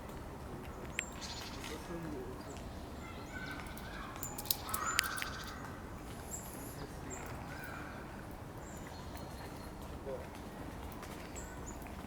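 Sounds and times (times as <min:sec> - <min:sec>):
small birds chirping: 0:00.6 - 0:10.2
crow cawing: 0:03.8 - 0:05.7.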